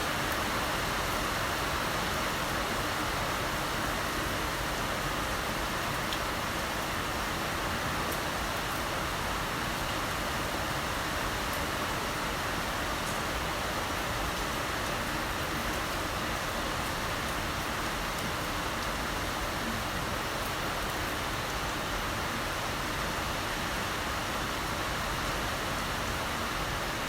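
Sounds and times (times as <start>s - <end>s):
heavy rain falling: 0.0s - 27.0s.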